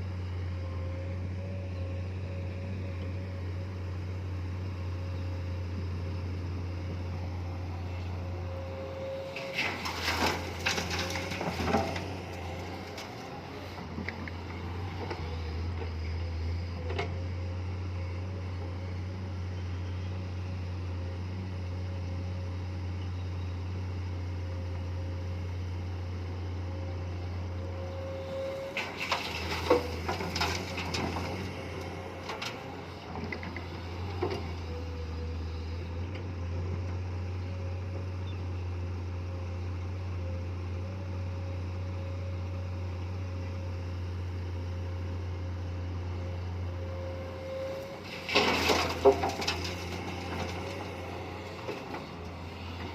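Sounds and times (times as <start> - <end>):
excavator diesel engine running: 0.0 - 52.9
faint hydraulic whine: 0.1 - 20.8, 26.7 - 38.4, 46.2 - 52.9.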